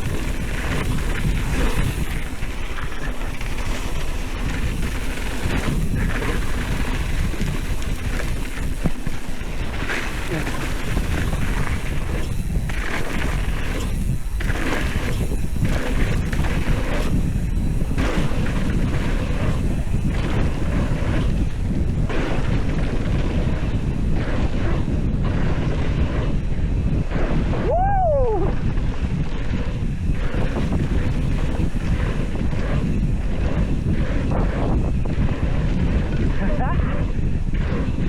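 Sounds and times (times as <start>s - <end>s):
bike rolling over dirt trail: 0.0s - 38.0s
wind buffeting microphone: 0.0s - 38.0s.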